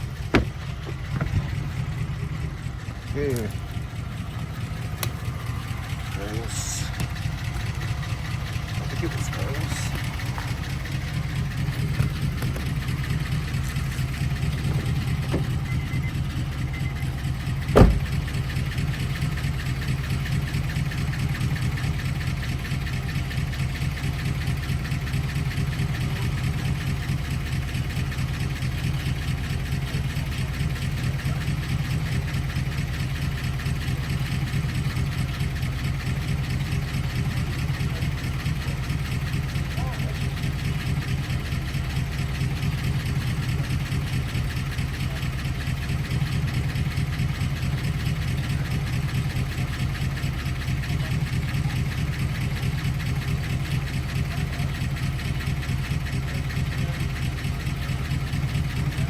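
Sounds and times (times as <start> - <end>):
car engine idling: 0.0 - 59.0
sharp knock: 17.8 - 18.2.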